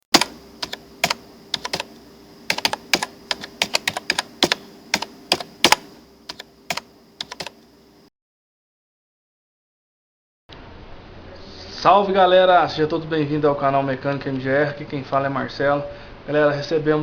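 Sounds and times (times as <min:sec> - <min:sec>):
keyboard key clicks: 0:00.0 - 0:07.6
faint steady hum: 0:00.0 - 0:08.1.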